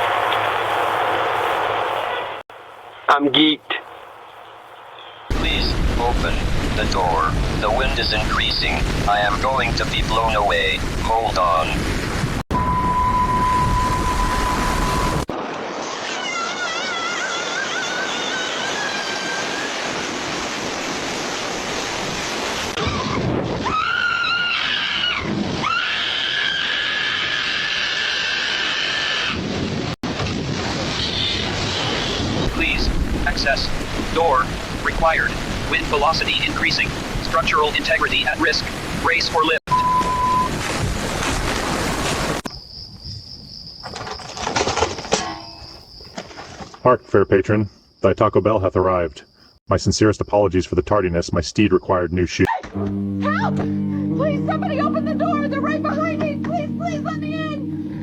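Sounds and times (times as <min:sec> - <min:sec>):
stormy wind and rain: 0:00.0 - 0:46.4
wavering high whistle: 0:12.6 - 0:15.2
monkey screeching: 0:22.8 - 0:29.4.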